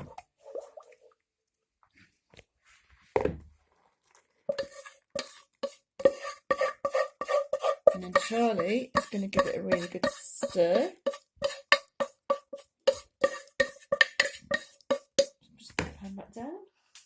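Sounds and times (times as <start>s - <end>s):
spoon scraping a metal pan: 4.5s - 15.4s.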